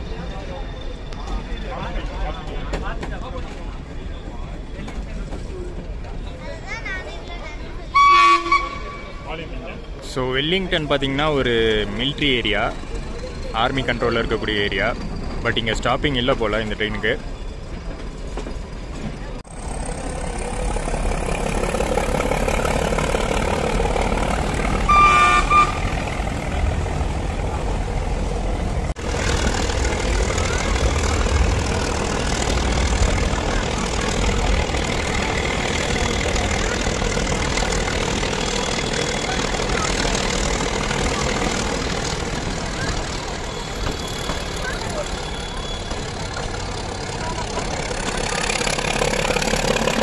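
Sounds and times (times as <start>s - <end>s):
train running noise inside coach: 0.0s - 50.0s
train horn toot: 7.9s - 9.4s, 24.8s - 26.2s.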